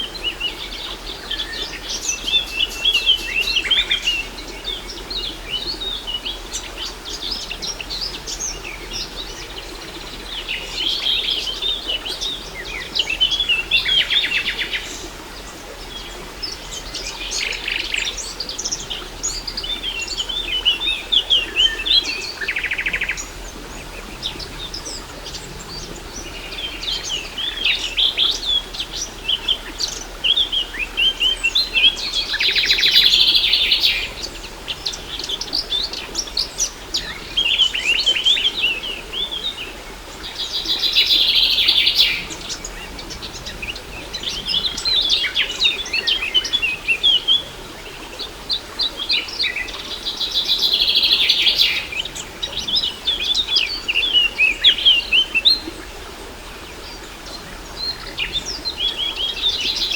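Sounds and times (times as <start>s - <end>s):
birds chirping and singing: 40.4s - 47.5s, 49.2s - 55.7s.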